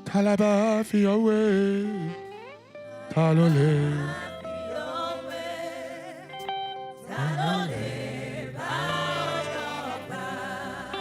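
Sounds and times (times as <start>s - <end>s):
musical accompaniment: 1.5s - 11.0s
voices singing gospel chorus: 1.7s - 11.0s.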